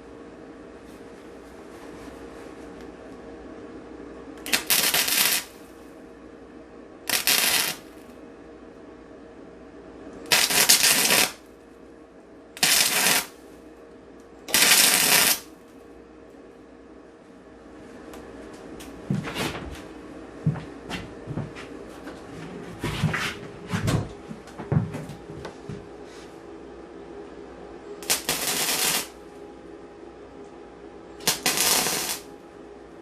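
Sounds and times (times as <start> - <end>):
electric welder arc crackling: 4.4 - 5.8, 7.1 - 8.1, 10.2 - 11.5, 12.6 - 13.4, 14.5 - 15.5, 28.0 - 29.2, 31.2 - 32.3.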